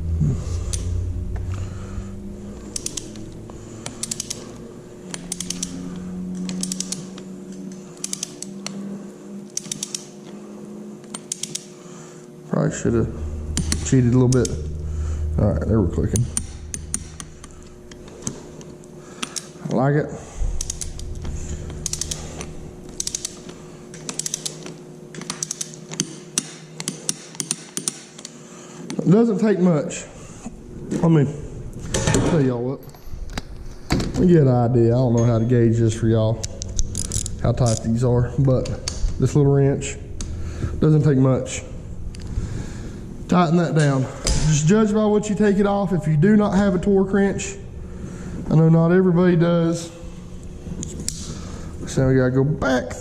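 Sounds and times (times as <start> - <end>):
ratchet wrench clicking: 2.7 - 3.2, 3.8 - 4.4, 5.1 - 7.2, 8.0 - 8.5, 9.6 - 10.1, 11.1 - 11.7, 20.6 - 21.0, 21.8 - 28.0.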